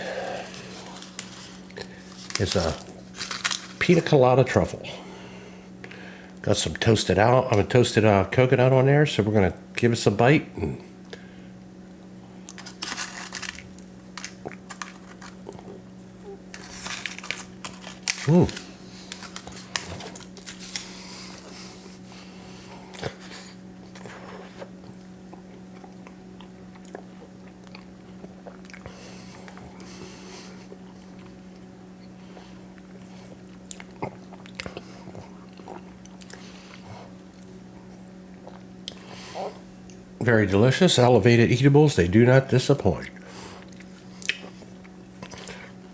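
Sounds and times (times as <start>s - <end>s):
steady low hum: 0.0s - 45.9s
chewing with soft crackles: 0.2s - 3.8s, 11.9s - 40.1s, 43.1s - 45.9s.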